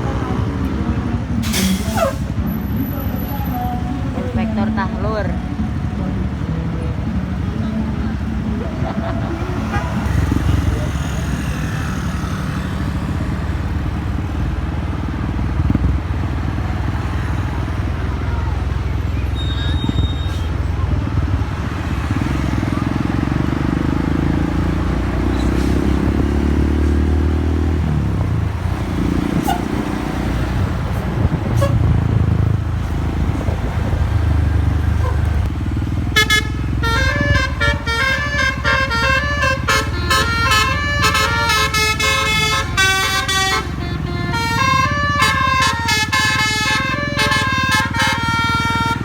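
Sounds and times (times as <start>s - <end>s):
vehicle engine rumble: 0.0s - 49.0s
musical air horn melody: 36.1s - 49.0s.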